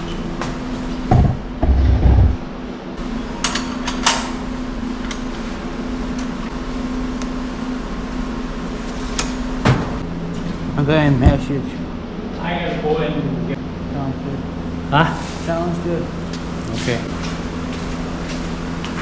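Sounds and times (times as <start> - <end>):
dull knocks: 1.1 - 2.4.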